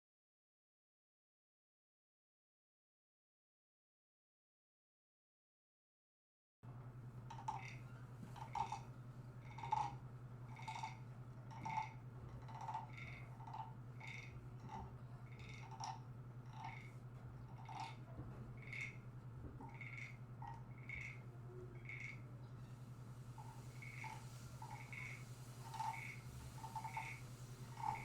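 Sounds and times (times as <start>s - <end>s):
steady low hum: 6.6s - 28.0s.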